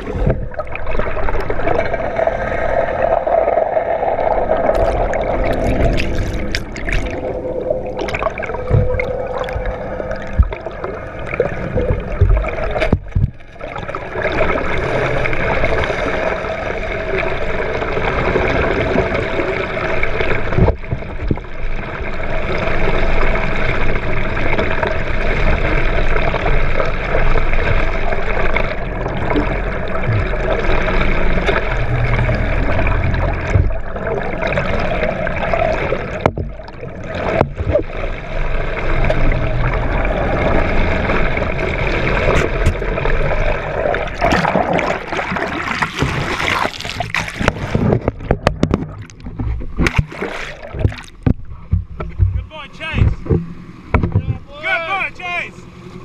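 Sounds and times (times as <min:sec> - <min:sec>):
boat engine running: 0:00.0 - 0:46.4, 0:47.2 - 0:56.0
water splashing along boat hull: 0:00.0 - 0:56.0
sharp knocks: 0:50.8 - 0:54.5.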